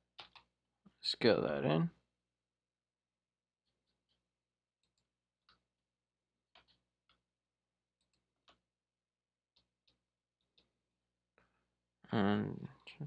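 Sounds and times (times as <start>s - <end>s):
mouse and keyboard clicks: 0.2s - 0.5s.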